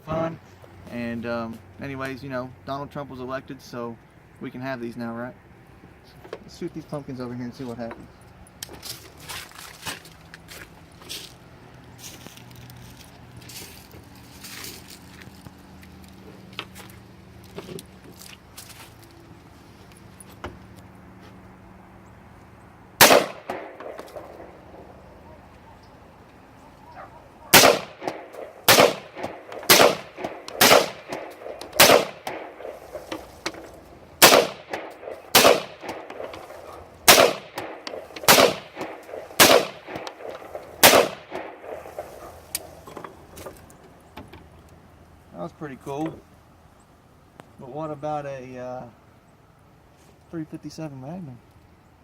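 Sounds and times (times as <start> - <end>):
rifle shots: 23.0 - 24.7, 27.5 - 33.2, 34.2 - 42.5.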